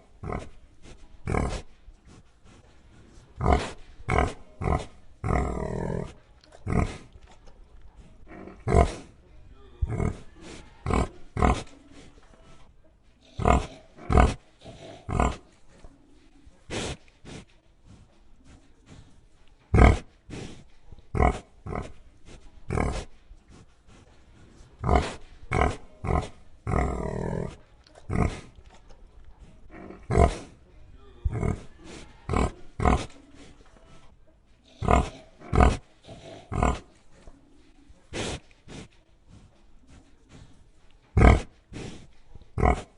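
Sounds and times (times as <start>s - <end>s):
pig grunting: 1.2s - 1.7s, 3.1s - 7.2s, 8.2s - 9.2s, 9.8s - 11.8s, 13.2s - 15.6s, 19.7s - 20.1s, 21.0s - 22.0s, 24.8s - 28.6s, 29.6s - 33.4s, 34.6s - 37.0s, 41.2s - 42.9s.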